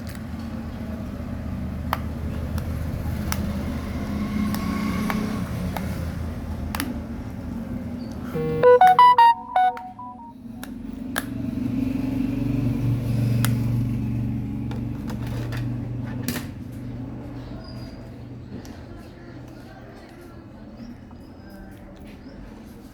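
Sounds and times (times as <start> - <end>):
phone electronic jingle: 8.4 - 10.3.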